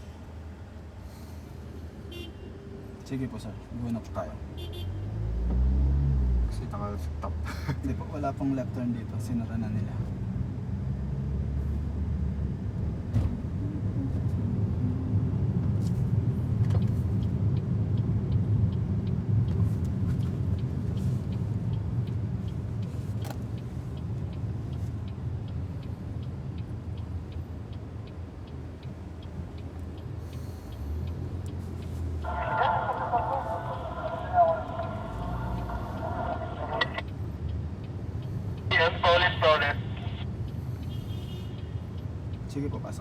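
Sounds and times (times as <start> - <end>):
road and tyre rumble: 0.0 - 43.0
faint regular ticking: 17.2 - 43.0.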